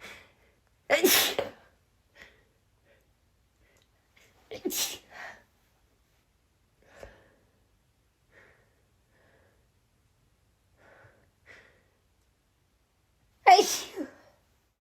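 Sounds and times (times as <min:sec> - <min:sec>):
woman sneezing: 0:00.9 - 0:01.6, 0:04.6 - 0:05.3, 0:13.5 - 0:14.3.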